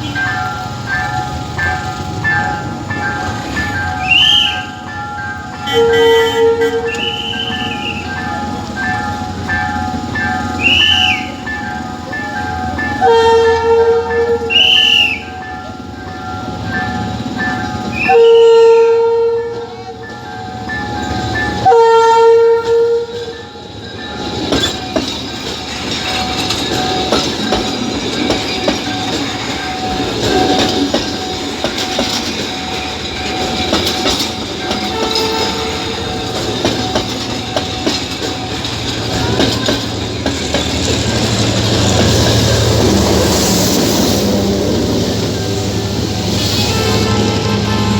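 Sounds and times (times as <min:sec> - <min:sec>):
train rumble and wheel clatter: 0:00.0 - 0:47.9
train horn blasts: 0:05.6 - 0:08.2, 0:10.6 - 0:11.4, 0:13.0 - 0:15.3, 0:17.9 - 0:20.0, 0:21.6 - 0:23.3, 0:34.9 - 0:36.4, 0:45.3 - 0:47.9.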